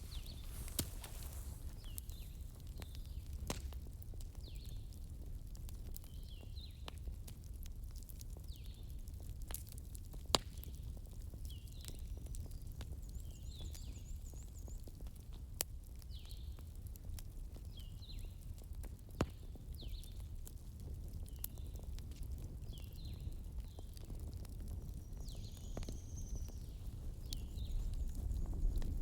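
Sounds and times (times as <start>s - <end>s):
wood fire crackling: 0.0s - 29.0s.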